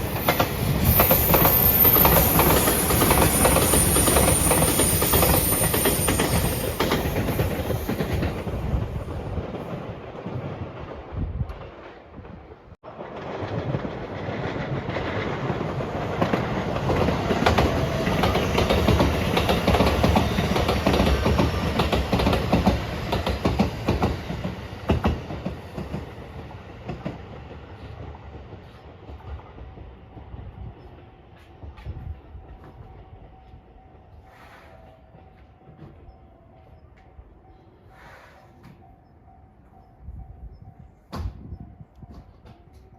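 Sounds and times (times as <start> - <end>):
wheels clacking over rail joints: 0.0 - 30.4
electric train passing: 0.0 - 42.9.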